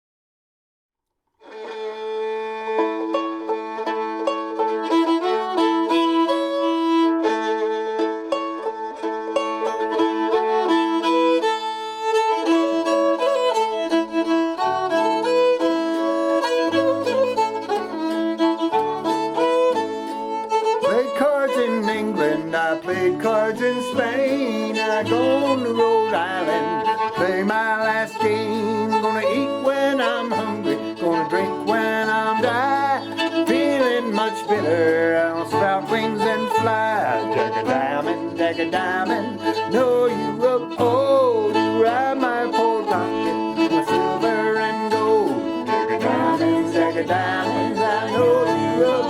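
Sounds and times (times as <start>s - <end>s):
fiddle melody: 1.4s - 49.0s
picked banjo: 1.4s - 49.0s.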